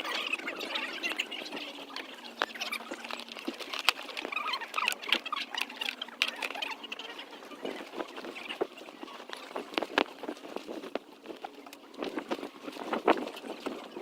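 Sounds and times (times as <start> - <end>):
faint steady hum: 0.0 - 14.0
rustling: 0.0 - 14.0.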